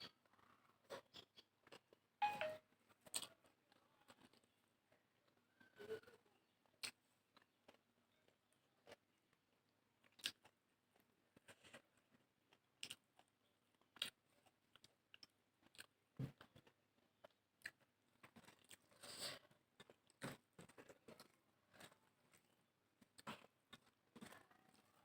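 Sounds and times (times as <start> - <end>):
chewing and crunching food: 0.0 - 25.0.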